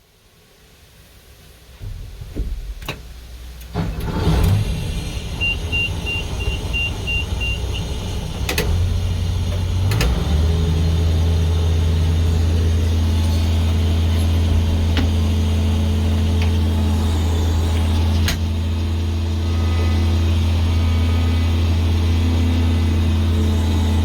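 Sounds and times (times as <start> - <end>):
vehicle engine running: 3.2 - 24.0
high warning beeps: 5.4 - 8.1.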